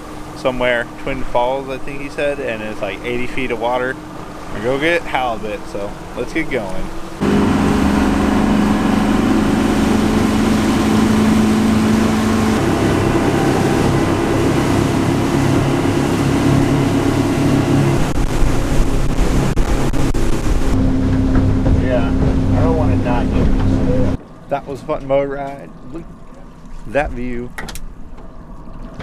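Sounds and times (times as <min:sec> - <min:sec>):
motorboat engine at speed: 0:00.0 - 0:29.0
sharp knocks or thumps: 0:20.8 - 0:23.9.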